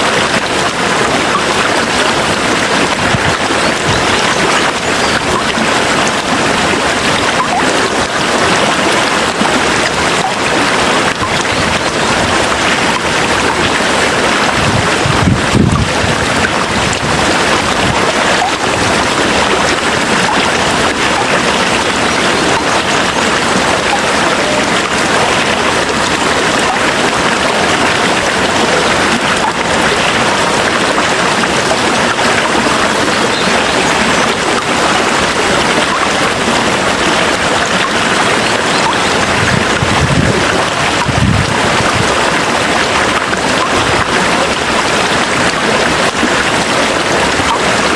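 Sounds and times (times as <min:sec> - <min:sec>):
dense rain: 0:00.0 - 0:47.9.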